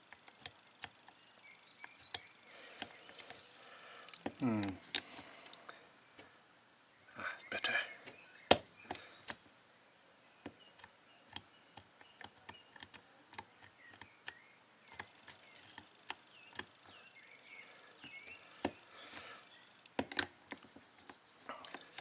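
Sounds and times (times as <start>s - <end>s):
small clicks of lock dials: 0.1s - 3.4s, 10.4s - 17.0s, 18.0s - 22.0s.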